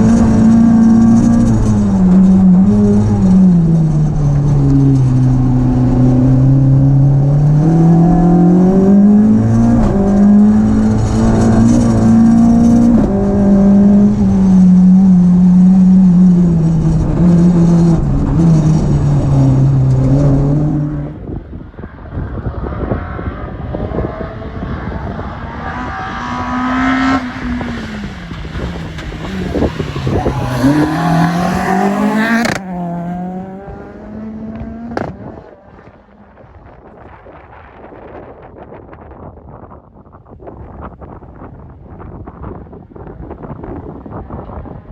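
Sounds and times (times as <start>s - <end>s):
car engine revving under load: 0.0s - 21.6s, 22.3s - 36.4s.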